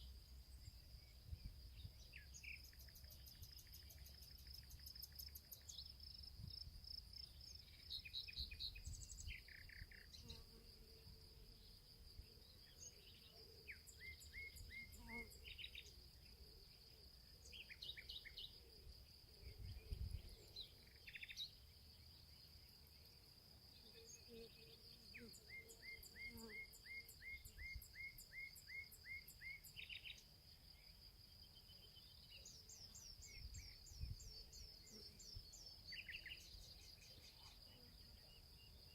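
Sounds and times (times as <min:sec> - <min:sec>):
high-pitched insect trill: 0:23.9 - 0:38.9.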